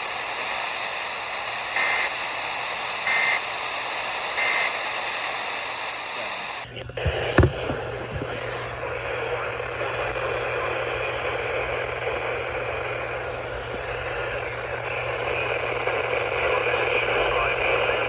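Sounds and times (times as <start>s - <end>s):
static hiss: 0.0s - 7.5s.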